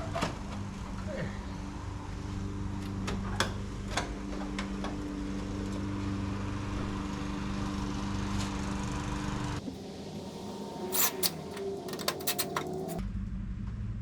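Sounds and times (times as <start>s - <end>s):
small petrol engine running: 3.7s - 13.0s.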